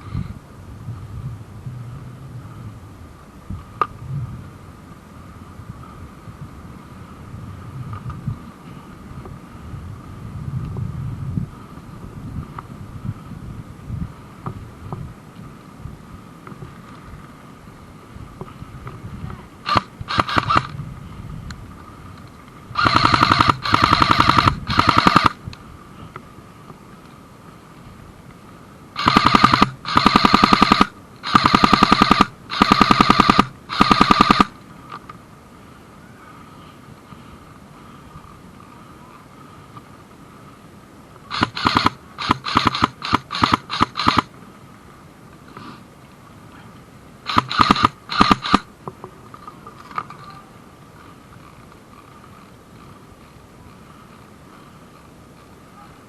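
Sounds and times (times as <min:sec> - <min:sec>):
airsoft gun firing: 0:19.6 - 0:20.7, 0:22.8 - 0:25.4, 0:29.0 - 0:34.5, 0:41.3 - 0:44.3, 0:47.3 - 0:48.7.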